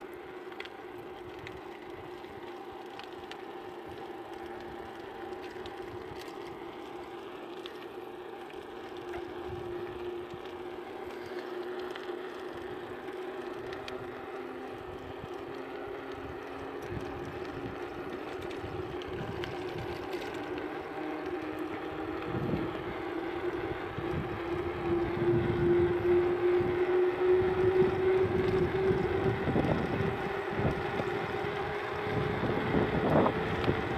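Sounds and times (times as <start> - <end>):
bike drone rising in pitch: 0.0 - 33.9
wind buffeting microphone: 16.1 - 20.3, 21.7 - 33.9.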